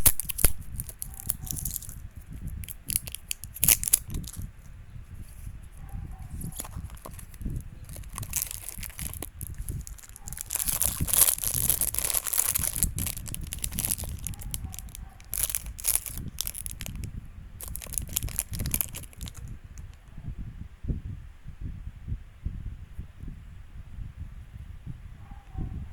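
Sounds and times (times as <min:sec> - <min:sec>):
packaging crinkling: 0:00.0 - 0:04.5, 0:06.3 - 0:20.0.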